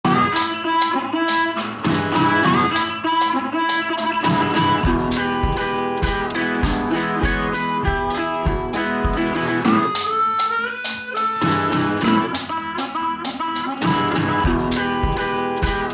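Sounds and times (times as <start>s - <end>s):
plucked guitar music: 0.0s - 15.9s
low beat: 4.0s - 10.7s, 11.3s - 15.9s.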